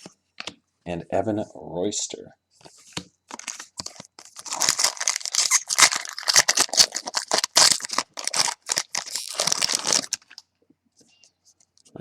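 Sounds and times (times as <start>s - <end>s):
cards and wrapper crinkling: 3.3s - 10.4s.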